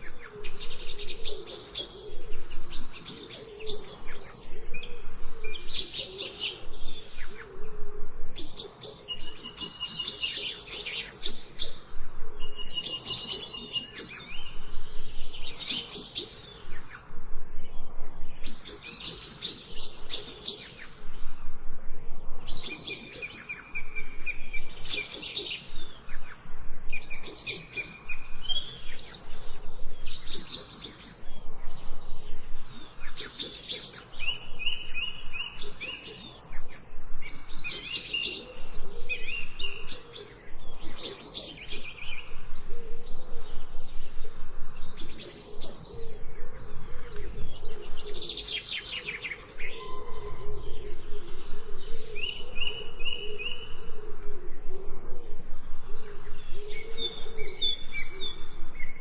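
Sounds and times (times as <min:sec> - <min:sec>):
songbirds chirping and trilling: 0:00.0 - 0:59.0.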